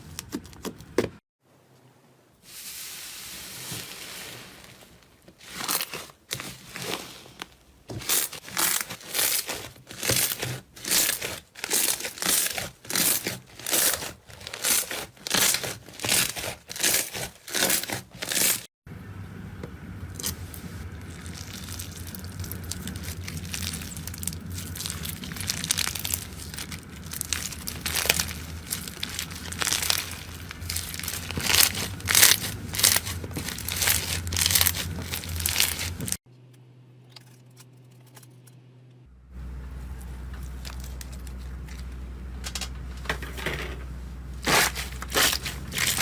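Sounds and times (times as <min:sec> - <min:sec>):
slime squishing by hand: 0:05.4 - 0:18.6, 0:20.1 - 0:36.2, 0:44.4 - 0:46.0
slime crackling: 0:05.4 - 0:18.7, 0:20.1 - 0:36.2, 0:44.4 - 0:46.0
low hum: 0:18.9 - 0:46.0.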